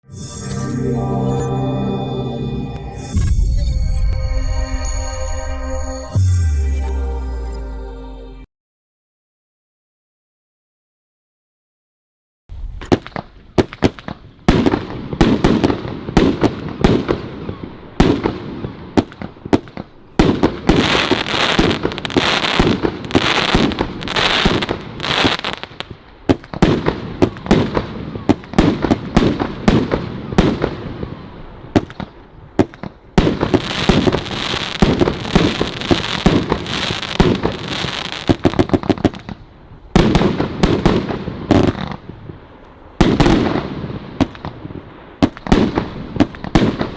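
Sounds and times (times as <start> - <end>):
firework cracks and bangs: 12.6 - 17.4, 18.0 - 31.1, 31.8 - 39.4, 40.0 - 42.4, 43.0 - 46.9.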